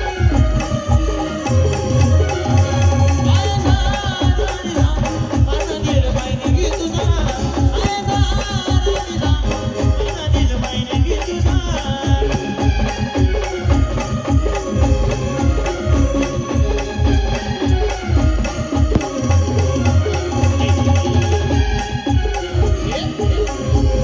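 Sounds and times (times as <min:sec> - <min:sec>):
ornamented high melody: 0:00.0 - 0:04.4, 0:12.5 - 0:24.0
live band music: 0:00.0 - 0:24.0
rattling shaker percussion: 0:00.0 - 0:24.0
steady drum beat: 0:00.0 - 0:24.0.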